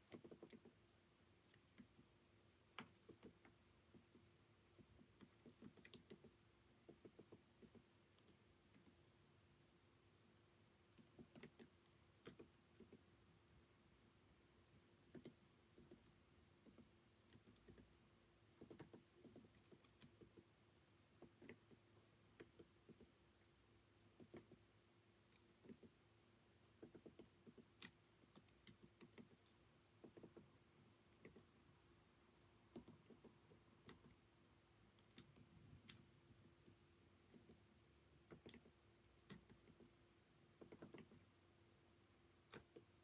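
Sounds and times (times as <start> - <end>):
keyboard typing: 0.0 - 0.8, 2.8 - 9.0, 10.9 - 13.0, 15.0 - 20.5, 21.1 - 23.2, 24.1 - 24.6, 25.3 - 26.0, 26.7 - 31.5, 32.7 - 34.2, 38.2 - 39.9, 40.5 - 41.3
faint steady hum: 0.0 - 43.0.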